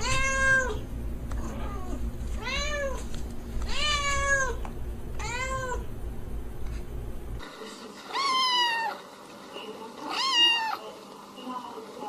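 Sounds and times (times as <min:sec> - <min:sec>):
cat meowing: 0:00.0 - 0:00.8, 0:01.4 - 0:03.0, 0:03.7 - 0:04.6, 0:05.2 - 0:05.9, 0:08.1 - 0:09.0, 0:10.1 - 0:10.8.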